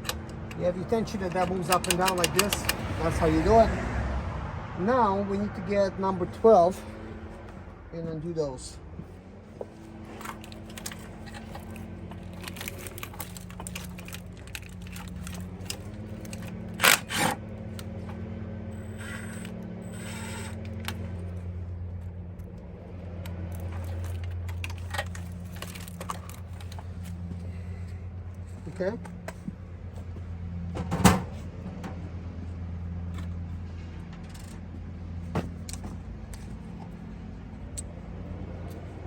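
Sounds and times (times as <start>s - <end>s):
metal hand tools clinking: 0.0s - 2.8s
socket ratchet clicking: 0.0s - 2.8s.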